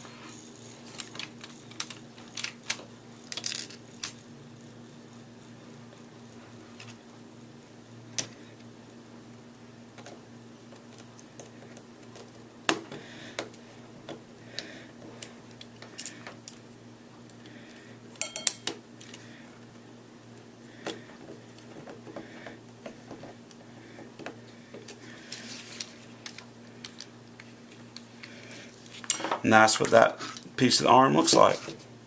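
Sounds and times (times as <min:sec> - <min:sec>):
small parts and screws clattering: 0:00.2 - 0:04.3, 0:15.2 - 0:16.6, 0:24.2 - 0:30.4.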